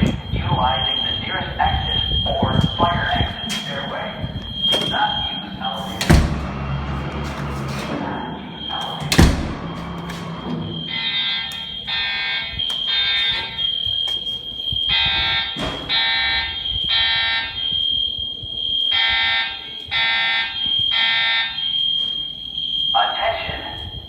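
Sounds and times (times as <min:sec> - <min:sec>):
door slamming: 0:02.6 - 0:11.8
alarm horn blasts: 0:04.6 - 0:13.8, 0:14.8 - 0:17.8
fire alarm high-pitched tone: 0:10.7 - 0:24.0.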